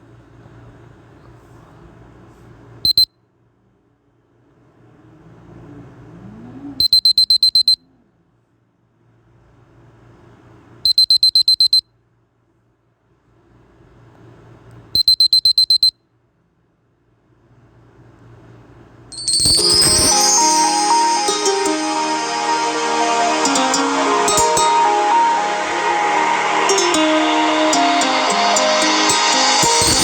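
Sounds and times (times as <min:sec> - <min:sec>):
faint rising hiss: 0:19.2 - 0:30.0
rapid high beeps: 0:19.2 - 0:30.0.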